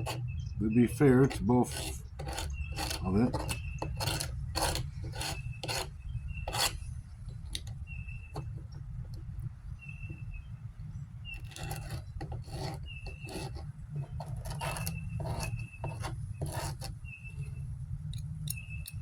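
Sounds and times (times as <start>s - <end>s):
tool scraping on tabletop: 0.0s - 0.2s, 0.9s - 6.8s, 11.3s - 17.0s.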